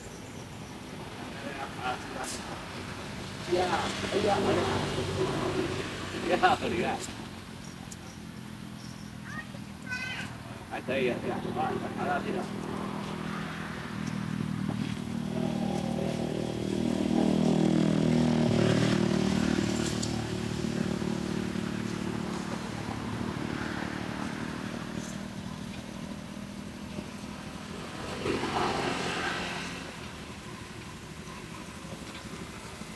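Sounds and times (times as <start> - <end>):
motorcycle engine passing: 0.6 - 32.9.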